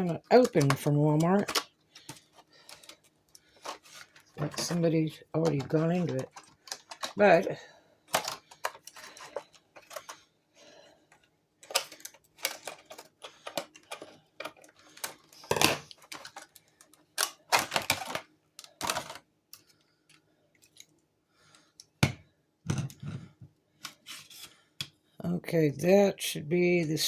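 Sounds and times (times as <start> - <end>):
staple gun and packaging handled: 0.0 - 7.5, 8.1 - 10.2, 11.6 - 19.3.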